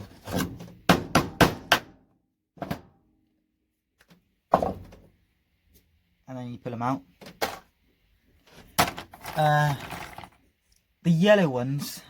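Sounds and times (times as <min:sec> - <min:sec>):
chisel knocking on plastic connectors: 0:00.8 - 0:01.9.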